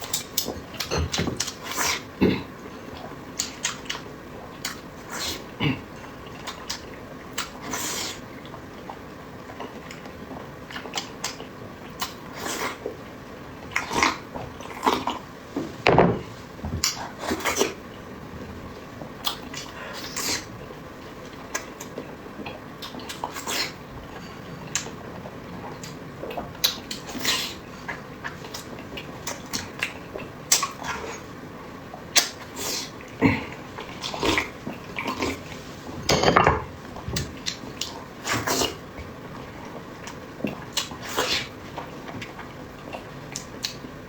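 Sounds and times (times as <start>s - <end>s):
lip-smacking: 43.0s - 43.9s.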